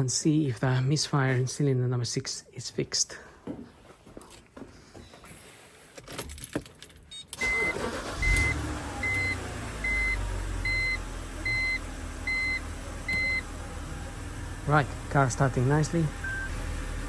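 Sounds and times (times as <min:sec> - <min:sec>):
keys jangling: 0:06.0 - 0:07.1
car engine starting and idling: 0:07.4 - 0:17.0.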